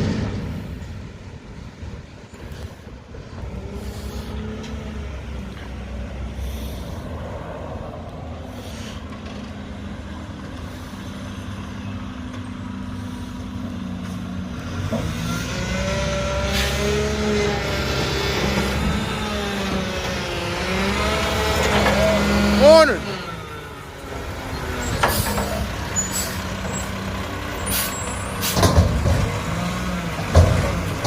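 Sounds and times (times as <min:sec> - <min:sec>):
garbage truck diesel engine: 0:00.0 - 0:31.0.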